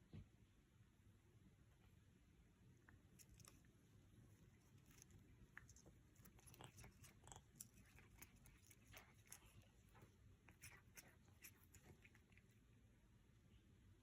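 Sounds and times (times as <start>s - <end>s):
cat chewing leaves: 2.8s - 12.9s.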